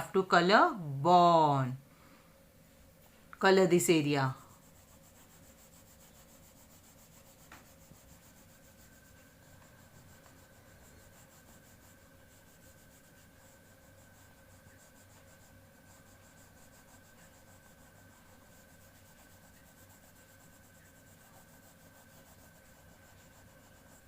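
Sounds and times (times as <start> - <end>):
low background hum: 0.0 - 24.0
pencil scratching on paper: 3.5 - 24.0.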